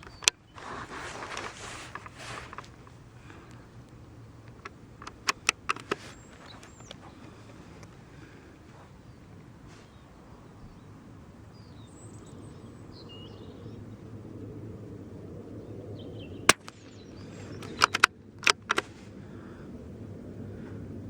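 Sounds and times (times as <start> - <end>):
faint birds chirping: 0.0 - 21.0
rifle bolt metallic clicks: 4.5 - 7.0, 16.5 - 18.9
rifle shot: 16.5 - 18.1.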